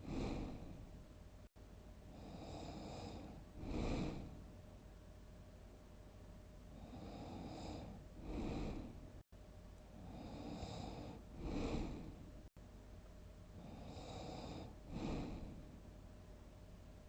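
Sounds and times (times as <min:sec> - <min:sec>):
person snoring: 0:00.0 - 0:00.8, 0:02.1 - 0:04.4, 0:06.7 - 0:09.0, 0:10.0 - 0:12.2, 0:13.6 - 0:15.6.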